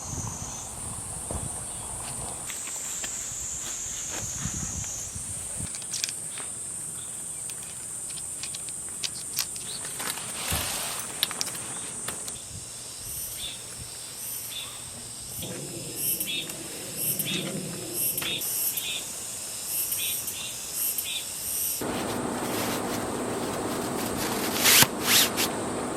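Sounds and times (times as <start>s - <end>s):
insects droning: 0.0s - 25.9s.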